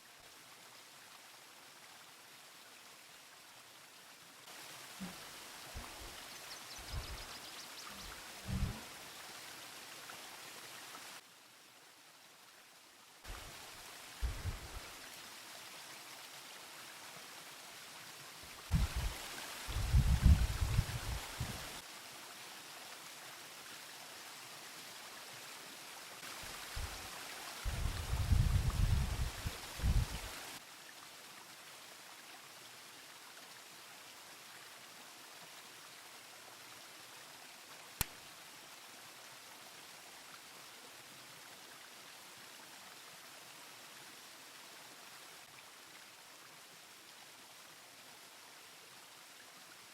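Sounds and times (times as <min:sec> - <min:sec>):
faint river rushing: 0:00.0 - 0:49.9
dull low thumps: 0:08.4 - 0:08.8, 0:14.2 - 0:14.8, 0:18.7 - 0:19.1, 0:19.7 - 0:21.6
river rushing: 0:18.4 - 0:21.9.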